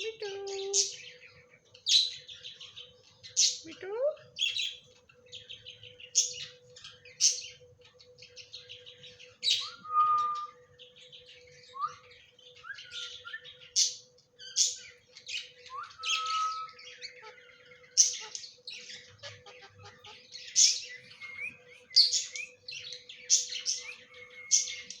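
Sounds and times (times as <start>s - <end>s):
parrot chirping and squawking: 12.9s - 25.0s.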